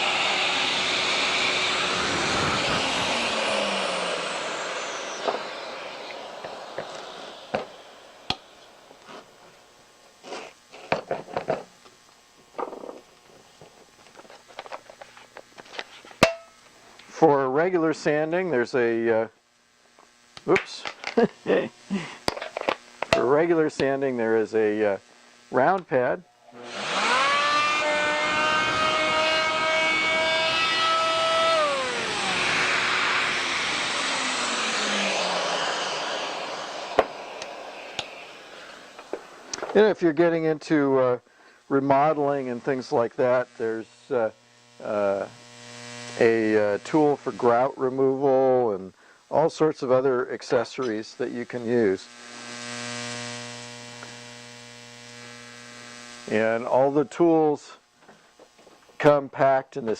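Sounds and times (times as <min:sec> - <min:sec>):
oscillating multi-tool motor: 0:00.0 - 0:11.7, 0:20.1 - 0:25.6, 0:26.4 - 0:39.9, 0:41.8 - 0:47.7, 0:51.3 - 0:57.1
steady rushing hiss: 0:00.0 - 0:59.9.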